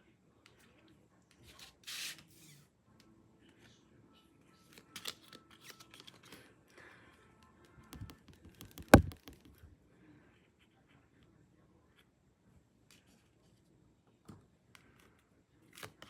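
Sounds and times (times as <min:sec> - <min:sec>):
sharp loud tap: 0:08.0 - 0:09.5.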